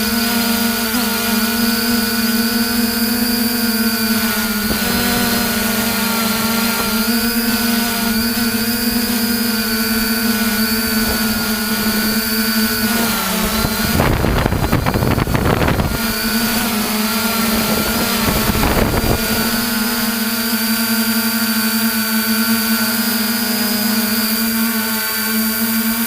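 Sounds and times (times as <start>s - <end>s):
drone propellers humming: 0.0s - 26.0s
wind on microphone: 2.3s - 20.4s.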